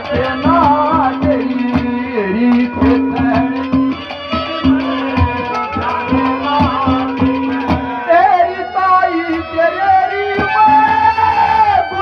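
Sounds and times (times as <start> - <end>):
hand drum strokes: 0.0 - 8.4
sustained melody instrument: 0.0 - 12.0.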